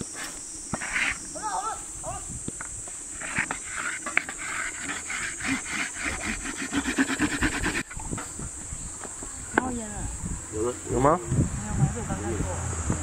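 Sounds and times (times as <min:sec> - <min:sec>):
rhythmic rasping rub under board: 0:03.1 - 0:07.9.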